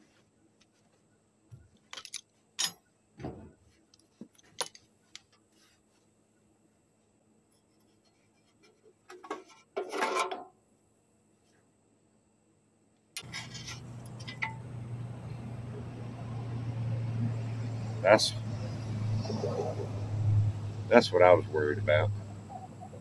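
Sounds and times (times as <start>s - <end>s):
metal parts clinking and rattling: 1.8s - 2.9s, 4.3s - 5.3s, 13.2s - 14.6s.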